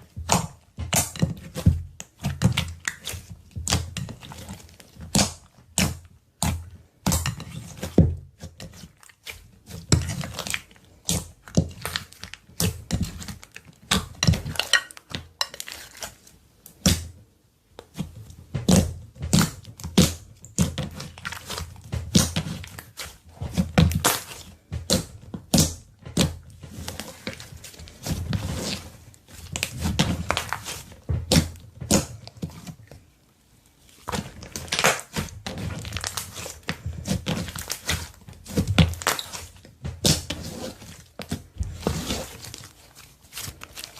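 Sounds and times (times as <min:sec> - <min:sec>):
slime squishing and popping: 0:34.0 - 0:42.7.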